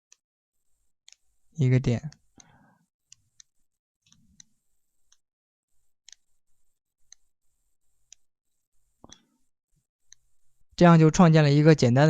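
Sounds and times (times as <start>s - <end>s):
faint computer mouse clicks: 3.1s - 5.2s, 6.0s - 6.3s, 9.0s - 9.5s, 10.1s - 10.3s.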